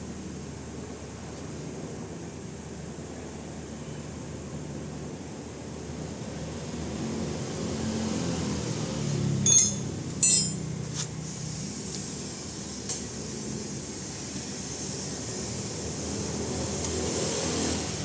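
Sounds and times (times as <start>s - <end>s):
bright metallic clinks: 9.5s - 10.8s.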